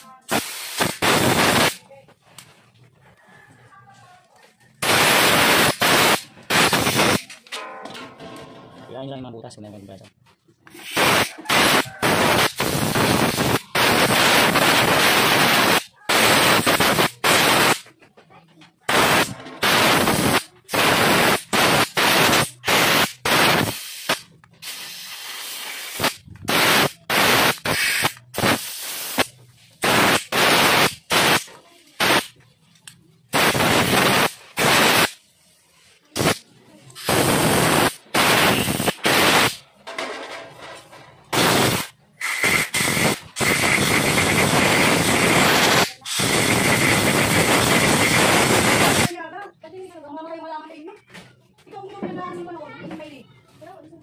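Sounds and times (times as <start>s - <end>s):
compressed air blow gun hissing: 0.2s - 1.8s, 10.7s - 17.8s, 18.9s - 32.3s, 33.3s - 35.2s, 37.0s - 39.6s, 41.4s - 49.1s.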